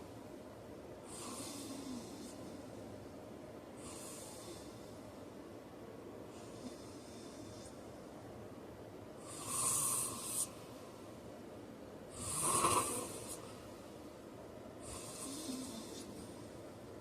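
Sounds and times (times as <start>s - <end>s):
man snoring: 9.2s - 10.5s, 12.2s - 13.4s, 14.8s - 16.3s.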